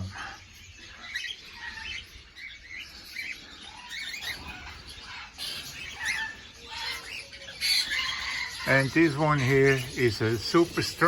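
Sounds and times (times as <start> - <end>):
cockatiels chirping: 0.0 - 11.0
wings fluttering: 3.9 - 7.1.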